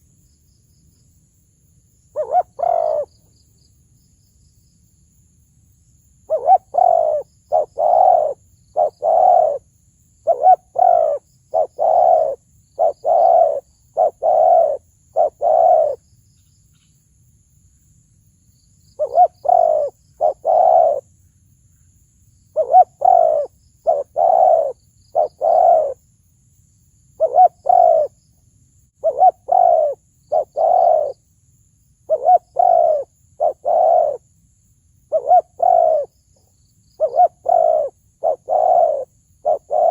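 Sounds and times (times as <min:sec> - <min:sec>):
dove cooing: 0:02.2 - 0:03.1, 0:06.3 - 0:09.6, 0:10.2 - 0:16.0, 0:19.0 - 0:21.1, 0:22.6 - 0:26.0, 0:27.2 - 0:28.2, 0:29.0 - 0:31.2, 0:32.1 - 0:34.2, 0:35.1 - 0:36.1, 0:37.0 - 0:39.9.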